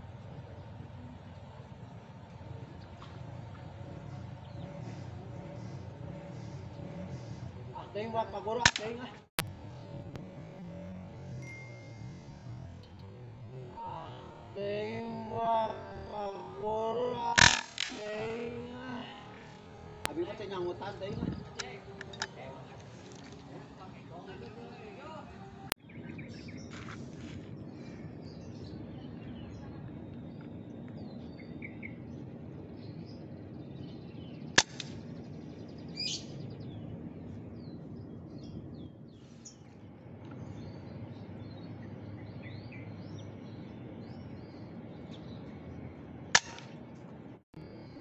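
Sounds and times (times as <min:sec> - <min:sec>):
small birds chirping: 0:00.0 - 0:48.0
air rifle shots: 0:08.6 - 0:09.1, 0:17.3 - 0:18.4, 0:34.6 - 0:35.1, 0:46.3 - 0:46.8.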